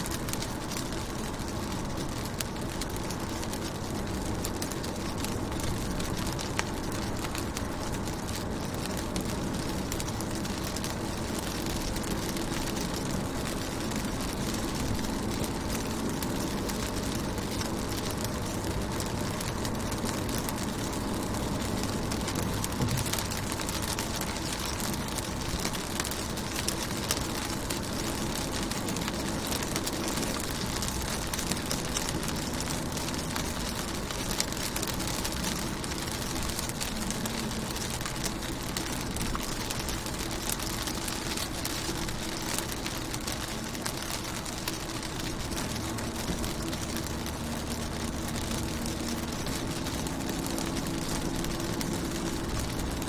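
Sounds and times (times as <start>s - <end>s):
rain on a car: 0.0s - 53.0s
low rumble: 0.3s - 40.8s.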